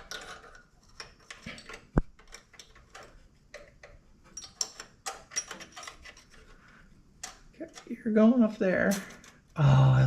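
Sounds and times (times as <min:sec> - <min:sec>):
small metal parts clicking: 0:00.0 - 0:06.5, 0:07.2 - 0:08.0.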